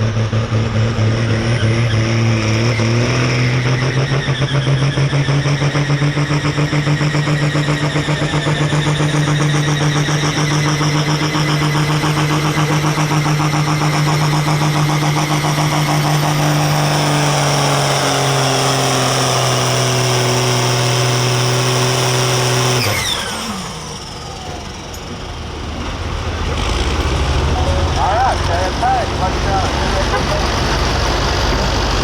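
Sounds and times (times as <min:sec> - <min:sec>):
tractor diesel engine at full throttle: 0:00.0 - 0:32.0
high whine winding down: 0:01.1 - 0:25.5.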